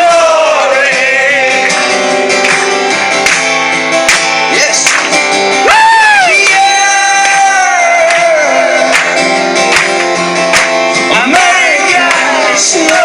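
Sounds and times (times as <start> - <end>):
man singing: 0.0 - 2.1, 4.5 - 9.4, 11.0 - 13.0
acoustic guitar: 0.0 - 13.0.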